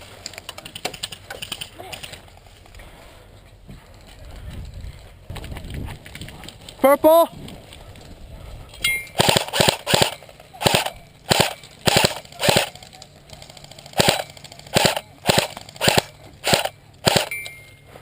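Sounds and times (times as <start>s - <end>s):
airsoft gun shots: 9.2s - 12.7s, 14.0s - 17.3s.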